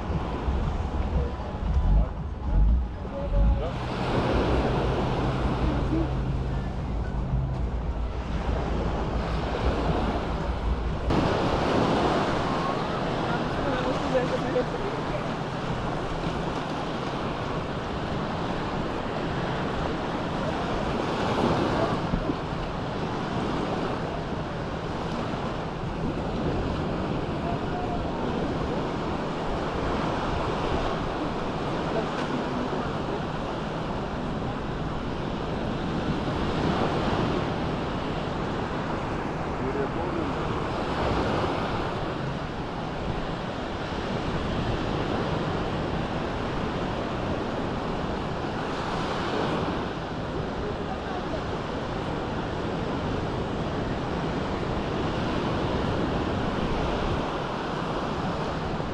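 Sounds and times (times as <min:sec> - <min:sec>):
wind on microphone: 0:00.0 - 0:39.6
surf washing onto beach: 0:00.0 - 0:58.9.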